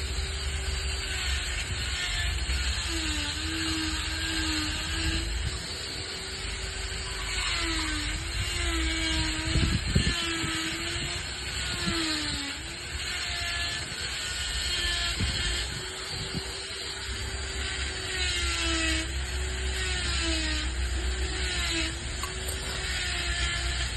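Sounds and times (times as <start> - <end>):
power tool grinding stone: 0.0 - 23.9.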